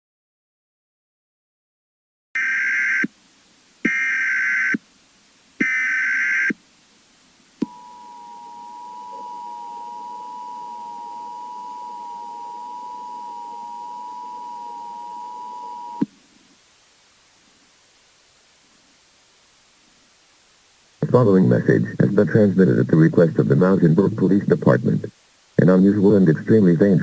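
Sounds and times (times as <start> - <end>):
digital data bursts: 5.6 - 6.6
two-tone alert signal: 7.7 - 16.0.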